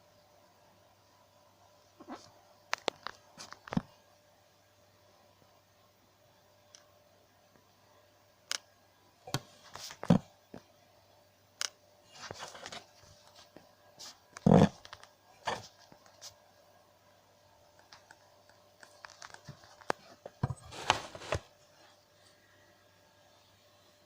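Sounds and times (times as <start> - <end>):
objects knocking and scraping: 18.9 - 21.5.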